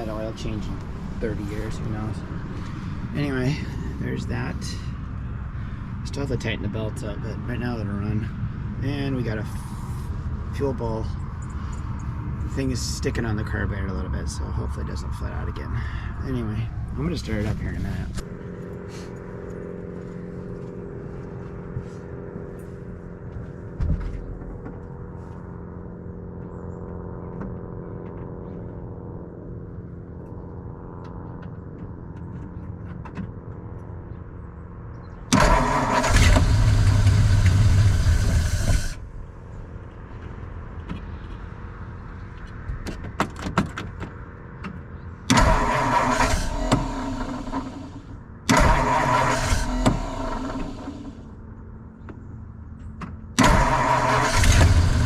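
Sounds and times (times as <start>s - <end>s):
engine starter cranking: 35.3s - 39.0s, 45.3s - 51.2s, 53.4s - 55.0s.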